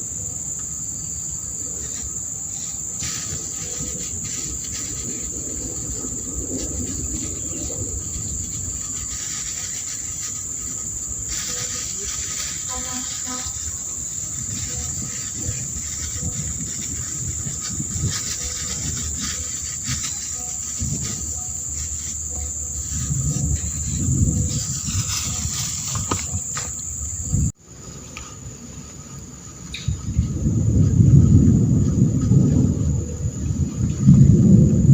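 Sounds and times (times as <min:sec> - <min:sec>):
insects chirring: 0:00.0 - 0:34.9
low rumble: 0:02.8 - 0:27.6.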